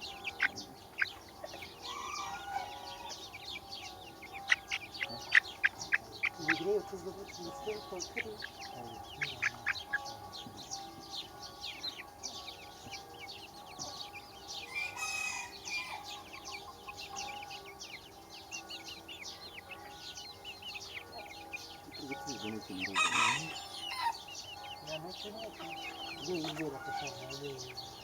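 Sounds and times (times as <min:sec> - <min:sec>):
baby chicks peeping: 0:00.0 - 0:28.0.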